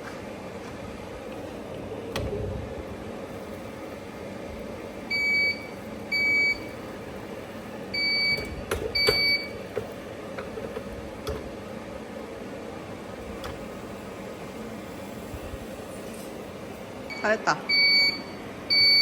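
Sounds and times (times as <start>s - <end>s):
room hum: 0.0s - 19.0s
appliance beeps: 5.0s - 9.9s, 17.0s - 19.0s.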